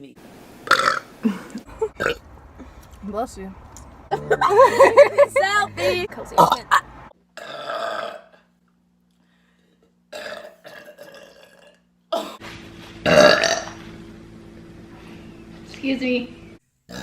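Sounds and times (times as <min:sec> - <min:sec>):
loud belches: 0:00.7 - 0:01.0, 0:01.9 - 0:02.2, 0:07.4 - 0:08.4, 0:10.1 - 0:12.4, 0:13.0 - 0:13.8.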